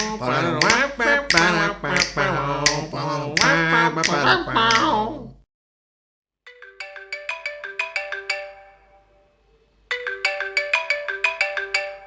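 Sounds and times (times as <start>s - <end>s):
mobile phone ringtone: 6.5s - 9.3s, 9.9s - 12.0s.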